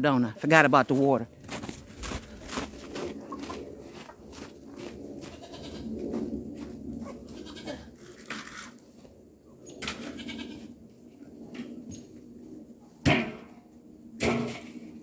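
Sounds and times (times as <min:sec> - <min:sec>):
goats bleating: 0:07.3 - 0:07.9.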